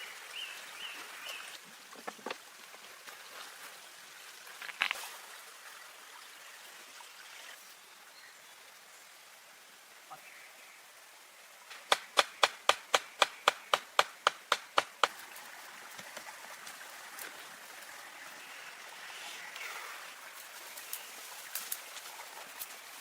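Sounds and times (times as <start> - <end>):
flowing water rushing: 0.0 - 23.0
sharp knocks: 11.8 - 15.1.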